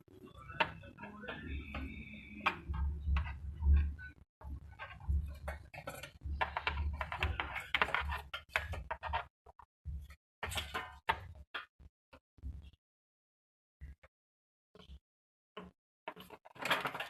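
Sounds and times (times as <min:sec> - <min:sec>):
rat scrabbling and scratching: 0:02.7 - 0:09.3, 0:16.1 - 0:17.0.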